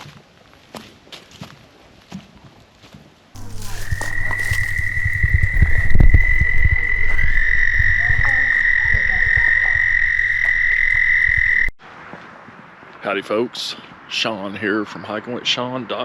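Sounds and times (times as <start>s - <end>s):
low rumble: 3.4s - 11.8s
toad trilling: 3.4s - 11.8s.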